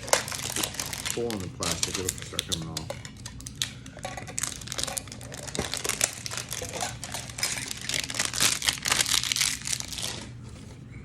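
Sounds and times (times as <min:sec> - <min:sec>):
plastic wrapping crinkling: 0:00.0 - 0:10.8.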